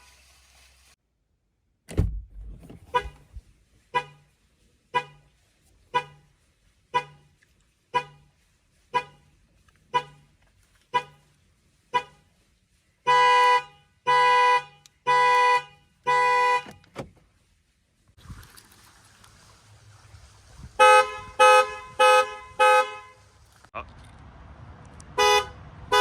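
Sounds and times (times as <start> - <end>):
car horn alarm toots: 2.9 - 4.2, 13.1 - 16.9, 20.8 - 23.2, 25.2 - 26.0.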